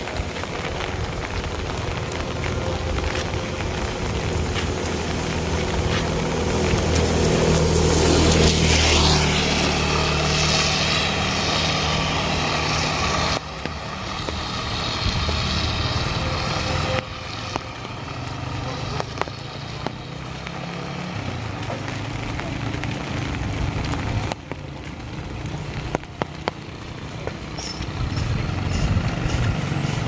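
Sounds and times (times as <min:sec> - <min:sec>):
rain hissing: 0:00.0 - 0:30.0
vehicle engine running: 0:00.0 - 0:30.0.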